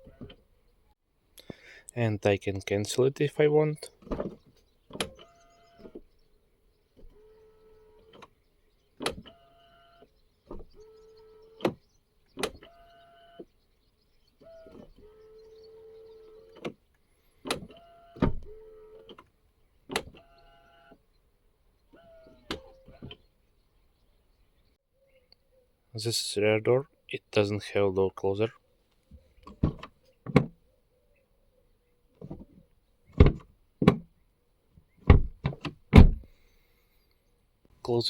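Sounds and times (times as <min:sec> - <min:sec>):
door latch clicks and clunks: 0:04.0 - 0:06.1, 0:09.0 - 0:09.4, 0:11.6 - 0:11.8, 0:12.4 - 0:12.8, 0:17.4 - 0:19.3, 0:19.9 - 0:20.2, 0:22.3 - 0:23.2, 0:29.4 - 0:30.6, 0:32.2 - 0:34.1, 0:35.0 - 0:36.3.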